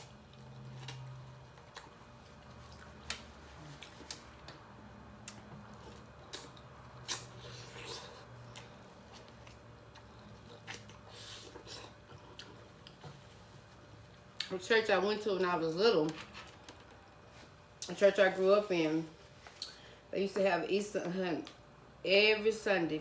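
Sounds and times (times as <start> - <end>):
wet chewing: 0.0 - 14.6.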